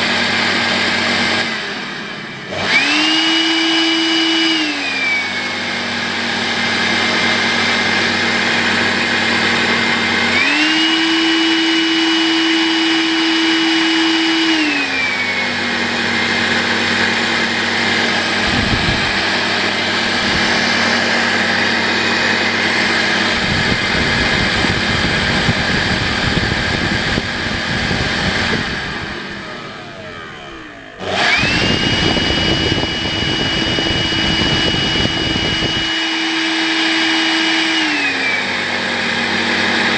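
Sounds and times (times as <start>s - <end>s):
vacuum cleaner motor hum: 0.0s - 39.9s
rough low rattle: 17.8s - 29.0s.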